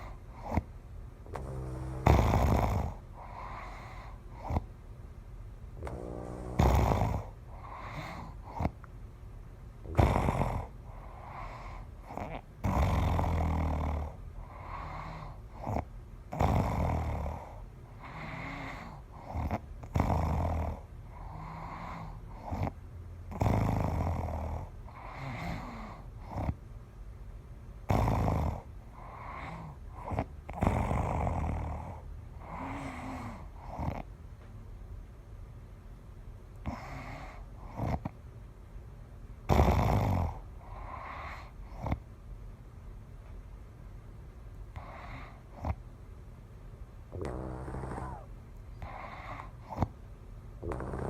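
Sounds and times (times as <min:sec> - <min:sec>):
person snoring loudly: 0:01.3 - 0:03.7, 0:05.8 - 0:08.0, 0:09.9 - 0:10.7, 0:47.2 - 0:48.3, 0:50.6 - 0:51.0
short snorts: 0:01.3 - 0:04.7, 0:05.8 - 0:08.8, 0:09.9 - 0:10.7, 0:36.7 - 0:38.1, 0:47.2 - 0:49.9, 0:50.6 - 0:51.0.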